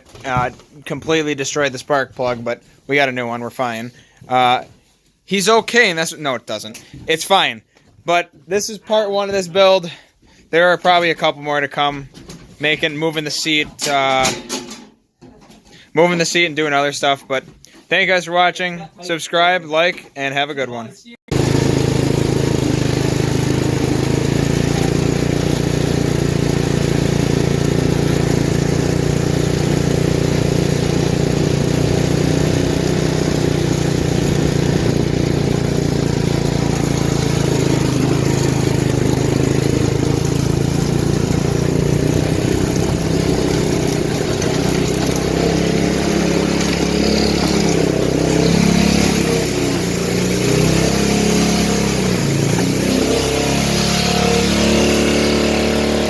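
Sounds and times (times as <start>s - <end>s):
riding mower engine running: 21.3s - 56.0s.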